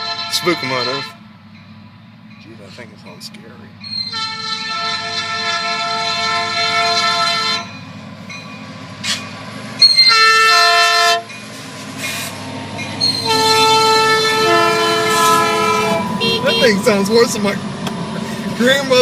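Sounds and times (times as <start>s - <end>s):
locomotive air horn blasts: 0.0s - 1.2s, 4.0s - 7.8s, 9.8s - 11.3s, 13.1s - 17.4s
locomotive engine rumbling: 0.0s - 19.0s
train wheels rumbling: 0.0s - 19.0s.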